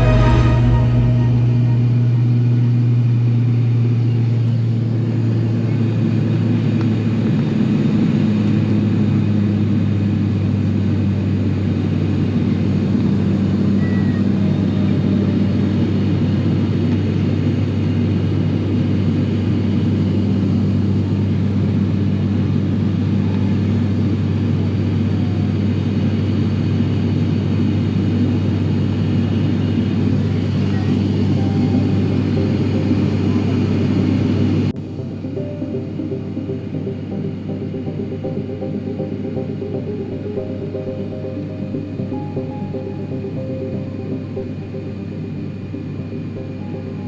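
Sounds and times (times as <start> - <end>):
even rushing noise: 0.0 - 3.2
airliner engines droning: 31.2 - 47.0.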